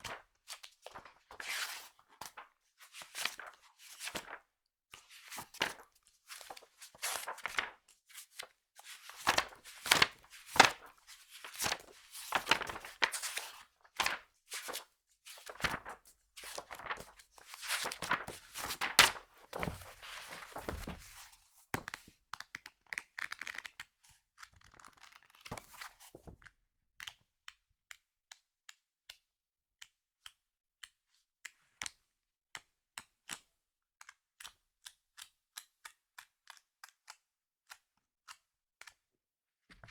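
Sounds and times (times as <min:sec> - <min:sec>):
magazine pages flipping: 0:00.0 - 0:04.4, 0:05.2 - 0:07.8, 0:08.4 - 0:22.0, 0:24.6 - 0:26.3.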